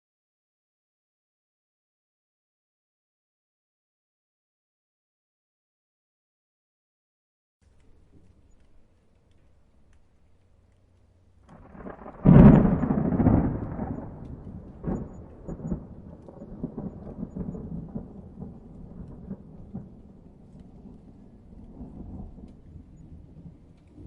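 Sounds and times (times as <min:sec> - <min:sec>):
thunder rumbling and cracking: 0:11.5 - 0:24.0.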